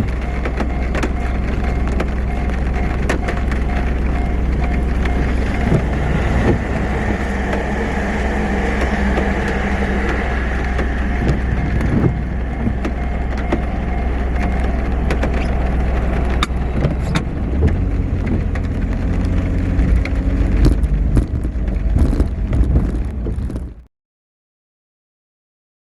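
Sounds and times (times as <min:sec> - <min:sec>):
traffic rumble: 0:00.0 - 0:23.9.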